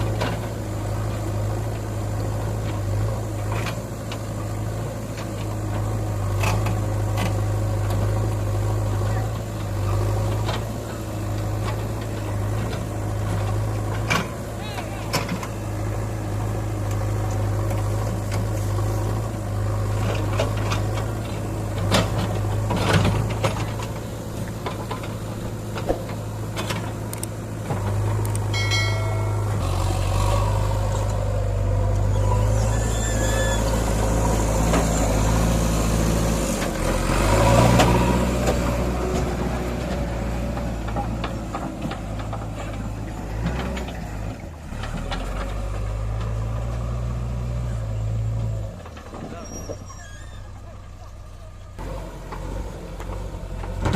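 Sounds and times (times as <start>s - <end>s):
heavy diesel engine running: 0.0s - 53.9s
high-pitched tone: 28.5s - 30.0s.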